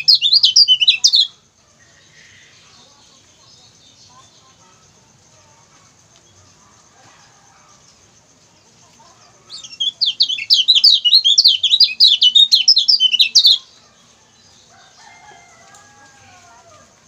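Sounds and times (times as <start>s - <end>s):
bird rapid high chirping: 0.0s - 1.4s, 9.4s - 13.8s.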